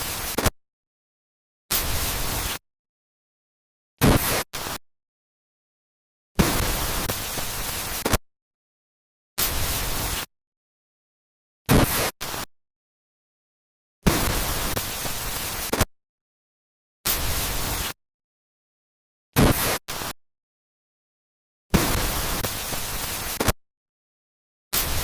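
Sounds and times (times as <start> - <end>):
harsh static noise bursts: 0.0 - 0.5, 1.7 - 2.6, 4.0 - 4.8, 6.4 - 8.2, 9.4 - 10.3, 11.7 - 12.5, 14.0 - 15.9, 17.1 - 18.0, 19.4 - 20.2, 21.7 - 23.6, 24.8 - 25.0.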